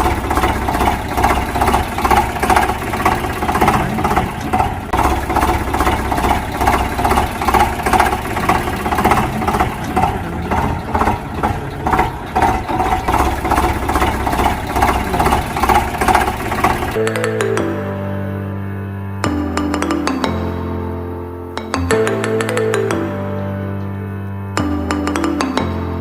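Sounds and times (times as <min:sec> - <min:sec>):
motor running with pulsing beat: 0:00.0 - 0:17.0.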